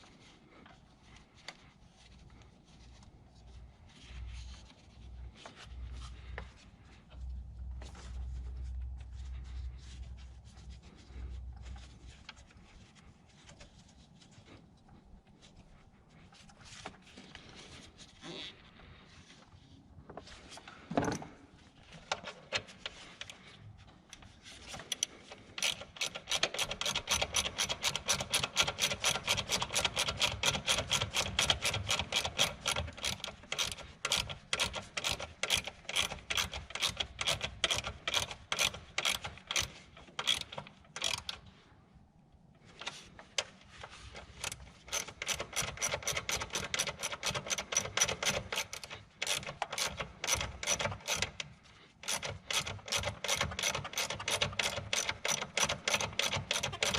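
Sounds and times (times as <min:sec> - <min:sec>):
ratchet wrench clicking: 0:24.9 - 0:41.4, 0:44.2 - 0:56.9.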